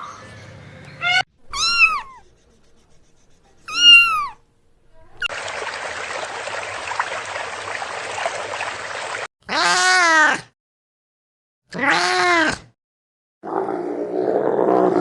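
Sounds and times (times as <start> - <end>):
cat meowing: 1.0 - 2.2, 3.7 - 4.4.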